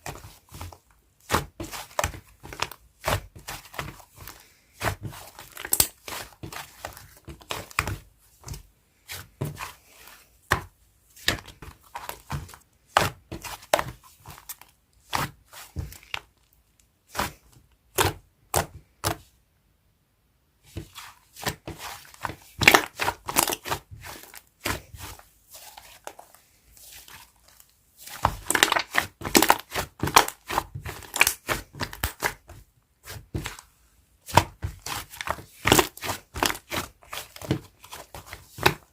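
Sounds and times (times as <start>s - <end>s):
sticky slime popping and crackling: 4.8s - 8.0s, 22.5s - 25.1s, 28.2s - 32.5s, 34.3s - 38.9s.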